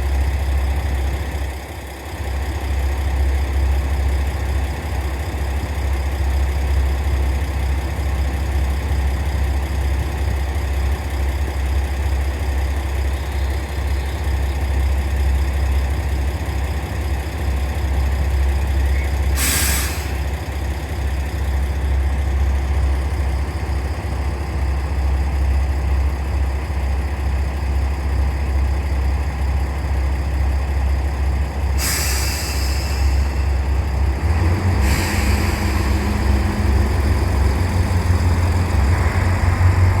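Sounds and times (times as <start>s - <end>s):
diesel engine idling: 0.0s - 40.0s
air brake hisses: 19.3s - 20.3s, 31.8s - 33.6s, 34.7s - 36.2s.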